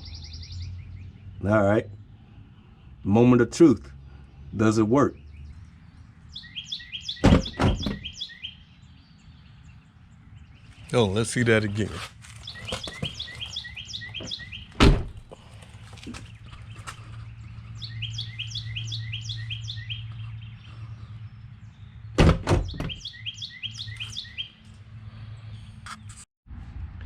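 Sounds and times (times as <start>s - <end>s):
bird chirping: 0.0s - 3.3s, 4.1s - 26.2s
door popper clunking: 7.2s - 8.1s, 14.2s - 15.2s, 22.2s - 23.0s.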